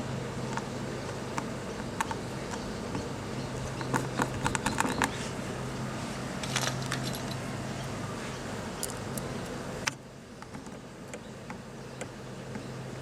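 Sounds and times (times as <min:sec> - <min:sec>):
low hum: 0:00.0 - 0:13.0.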